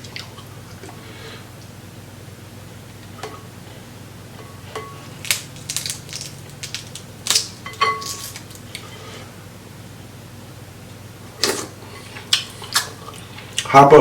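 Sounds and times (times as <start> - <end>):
crab shells cracking: 5.2 - 8.8.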